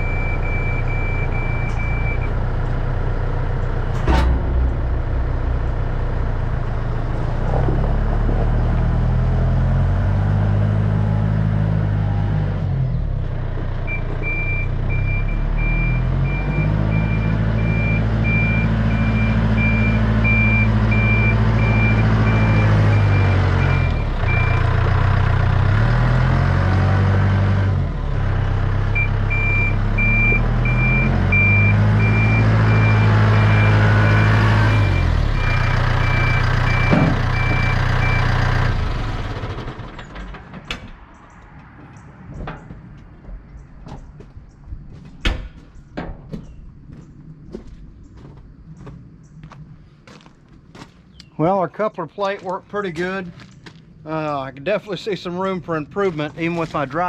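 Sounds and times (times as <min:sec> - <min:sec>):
reversing alarm beeping: 0:00.0 - 0:02.5, 0:13.9 - 0:24.8, 0:28.9 - 0:38.9
vehicle engine revving: 0:00.0 - 0:40.0
sharp clunk: 0:03.7 - 0:07.6, 0:36.9 - 0:37.8.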